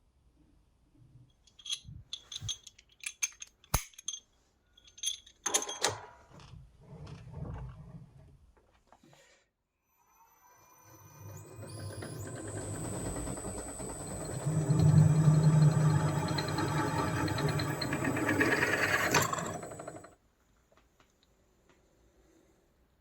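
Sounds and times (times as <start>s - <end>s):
drill press whining: 10.6s - 20.2s
mechanical rattle: 11.2s - 20.2s.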